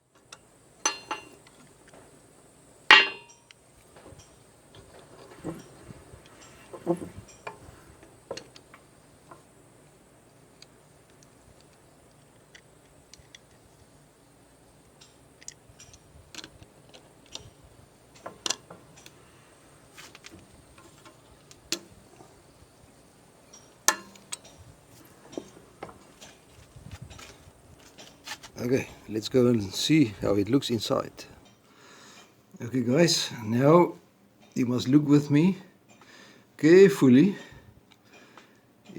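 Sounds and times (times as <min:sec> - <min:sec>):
hand tools clicking on metal: 0:00.2 - 0:02.0, 0:02.9 - 0:09.4, 0:14.8 - 0:22.3, 0:23.5 - 0:26.4.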